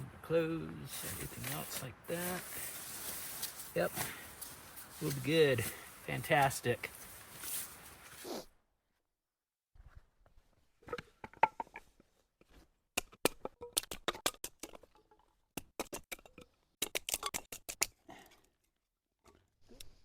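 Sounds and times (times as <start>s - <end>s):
light rustles: 0.9s - 8.3s.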